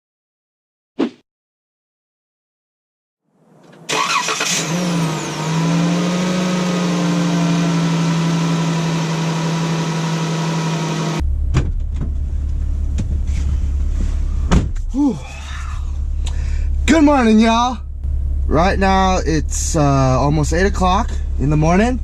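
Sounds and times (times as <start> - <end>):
car engine starting and idling: 3.4 - 22.0
deep low rumble: 11.2 - 22.0.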